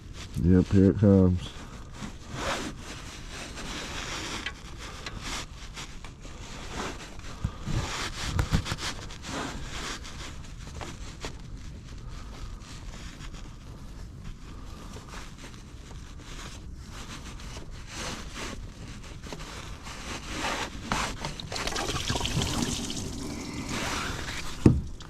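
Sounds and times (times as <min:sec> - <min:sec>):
fuel draining into a pan: 0:21.2 - 0:25.0.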